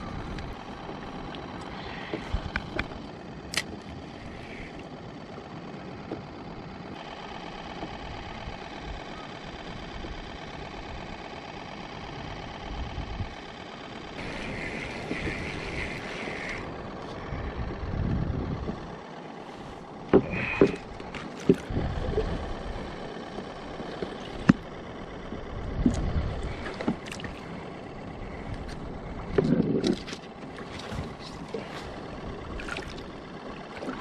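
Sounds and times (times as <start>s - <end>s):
wind: 0.0s - 34.0s
water noise around kayak: 14.2s - 17.2s, 18.6s - 34.0s.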